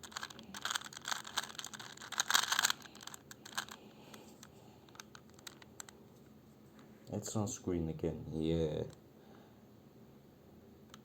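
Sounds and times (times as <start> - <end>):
puzzle cube clicking: 0.0 - 6.0.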